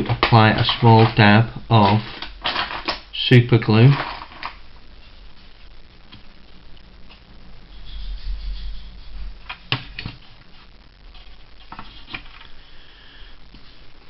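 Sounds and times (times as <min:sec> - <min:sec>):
small objects clicking and tapping: 0:00.0 - 0:03.1, 0:03.9 - 0:04.6.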